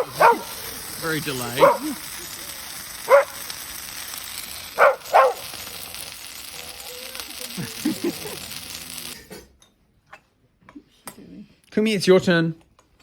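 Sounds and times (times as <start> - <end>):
dog barking: 0.0 - 0.6, 1.6 - 2.0, 3.1 - 3.4, 4.8 - 5.4
bonfire crackling: 0.0 - 9.3.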